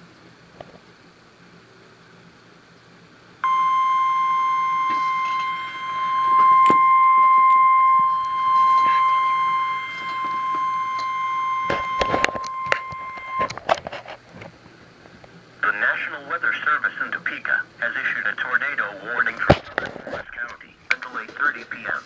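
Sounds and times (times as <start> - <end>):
steady alarm beep: 3.4 - 13.5.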